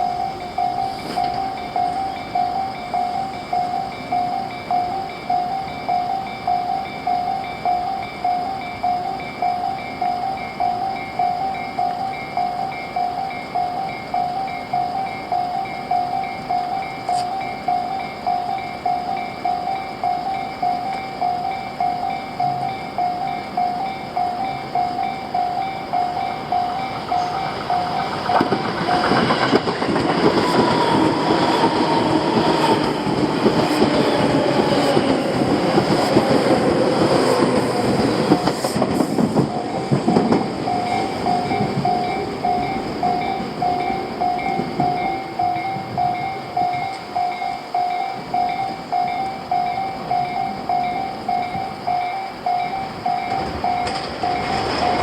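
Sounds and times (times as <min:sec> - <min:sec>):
level-crossing warning bell: 0:00.0 - 0:55.0
train whine falling in pitch: 0:00.0 - 0:55.0
train wheels clacking over rail joints: 0:26.0 - 0:47.1, 0:52.6 - 0:55.0.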